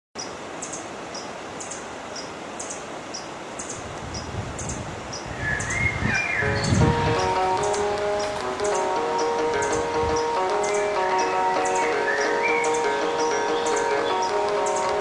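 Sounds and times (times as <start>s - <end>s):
river water rushing: 5.3s - 15.0s
bird whistle: 5.4s - 6.8s, 10.6s - 14.9s
high regular chirp: 5.5s - 15.0s.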